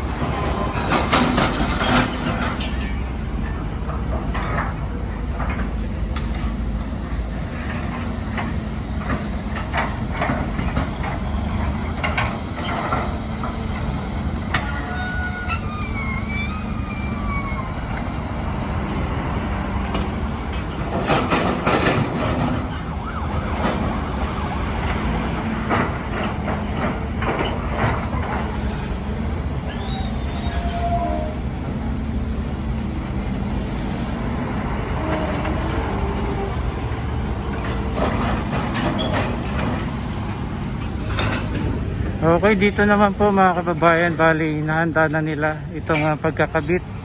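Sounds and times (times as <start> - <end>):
heavy machinery rumbling: 0.0 - 47.0
falling squeal: 0.1 - 3.6, 13.8 - 18.5, 21.0 - 24.4, 29.6 - 31.7, 37.6 - 39.9
metal clanks and knocks: 0.2 - 6.7, 7.6 - 15.2, 19.2 - 29.7, 34.4 - 44.0.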